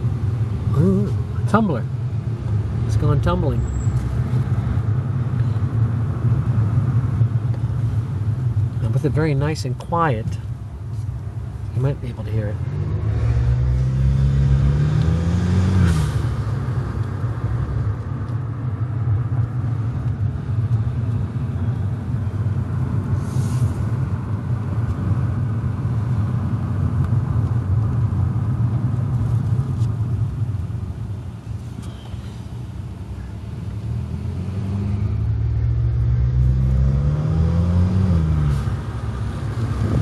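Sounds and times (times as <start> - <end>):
road noise: 0.0 - 40.0
car engine accelerating: 12.3 - 30.2, 33.6 - 40.0.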